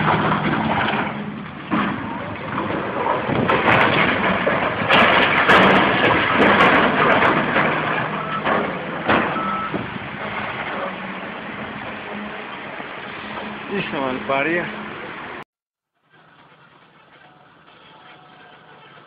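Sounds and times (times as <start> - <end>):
heavy machinery clattering: 0.0 - 14.9.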